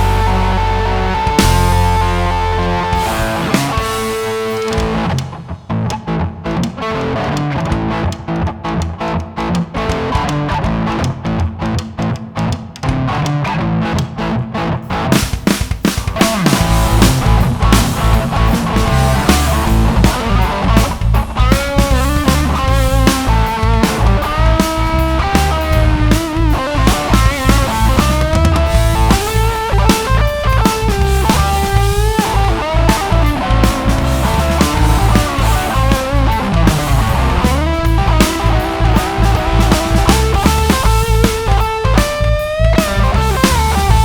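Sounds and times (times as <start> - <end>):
drum kit: 0.0 - 44.0
electric guitar lead lines: 0.0 - 44.0.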